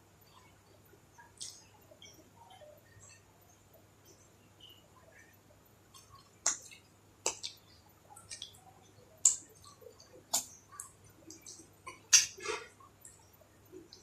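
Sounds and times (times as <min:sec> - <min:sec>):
person chewing with lip smacks: 0:05.9 - 0:07.6.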